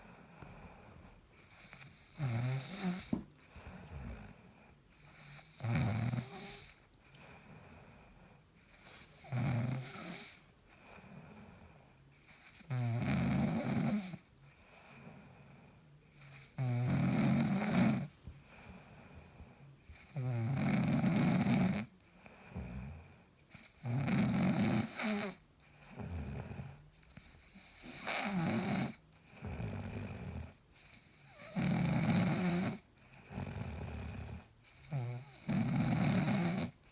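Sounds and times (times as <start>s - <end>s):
man snoring: 1.9s - 3.2s, 5.2s - 6.7s, 9.2s - 10.4s, 12.7s - 14.2s, 16.3s - 18.1s, 20.0s - 21.9s, 23.8s - 26.7s, 27.6s - 30.6s, 31.2s - 36.8s.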